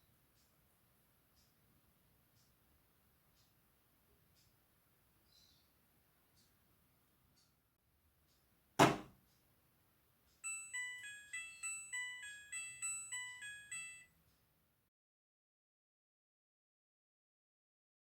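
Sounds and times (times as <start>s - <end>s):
single thunk: 8.8s - 9.1s
washing machine beeping melody: 10.4s - 14.1s.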